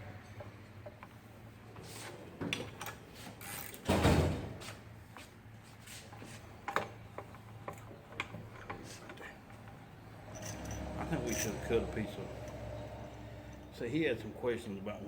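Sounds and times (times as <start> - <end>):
tools and metal parts clicking: 6.6 - 11.8.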